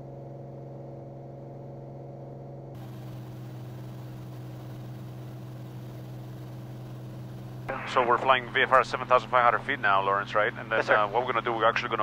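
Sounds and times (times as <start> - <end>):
piston aircraft engine droning: 2.8 - 12.0.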